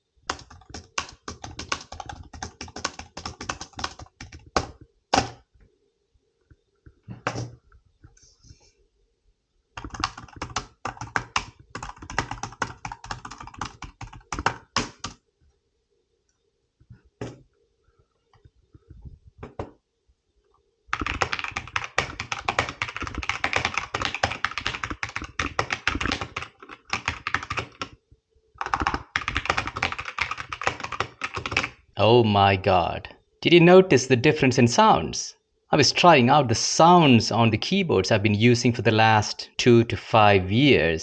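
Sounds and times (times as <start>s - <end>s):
fast typing on keyboards: 0.3s - 5.4s, 9.8s - 15.2s, 20.9s - 28.0s, 28.6s - 31.8s.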